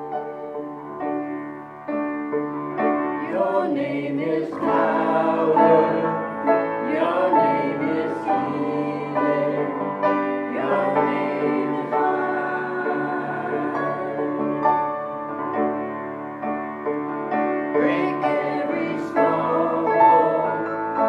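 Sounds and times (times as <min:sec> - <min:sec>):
piano accompaniment: 0:00.0 - 0:21.0
people singing worship song: 0:03.2 - 0:15.2, 0:17.7 - 0:21.0.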